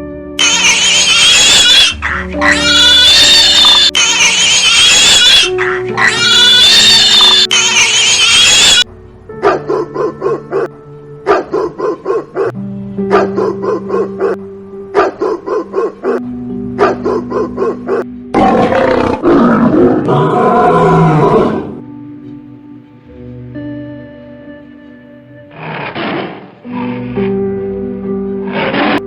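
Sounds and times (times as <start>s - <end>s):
light plucked background music: 0.0s - 29.0s
loud animal roar: 0.4s - 8.8s, 17.9s - 21.8s, 25.5s - 27.4s, 28.4s - 29.0s.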